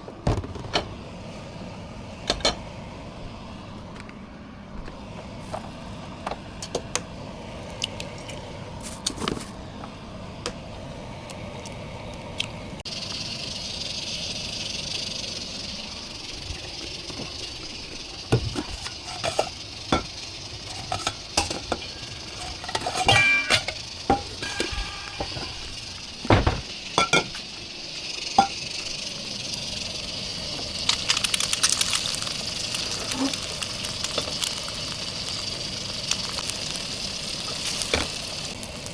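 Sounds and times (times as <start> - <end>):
food sizzling in a frying pan: 12.8 - 38.9.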